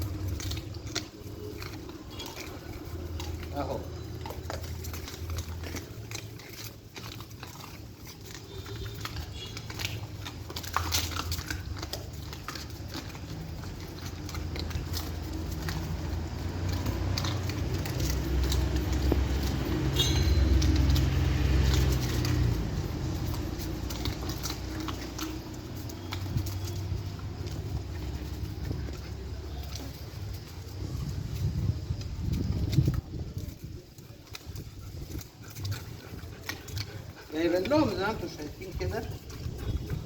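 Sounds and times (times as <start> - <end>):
dogs eating and chewing: 0.0 - 40.0.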